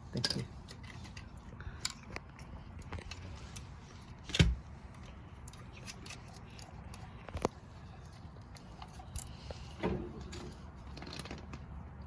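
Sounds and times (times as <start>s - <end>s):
metal parts clicking: 5.4s - 7.5s.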